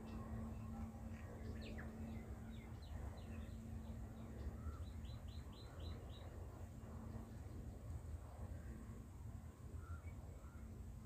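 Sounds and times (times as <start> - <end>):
small birds chirping: 0.0 - 6.4
steady low hum: 0.0 - 11.0.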